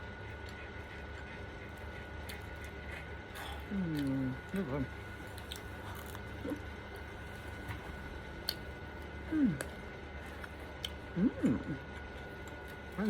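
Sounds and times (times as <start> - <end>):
person chewing crispy food: 0.3 - 13.0
person humming mm: 9.3 - 9.7, 11.1 - 11.8.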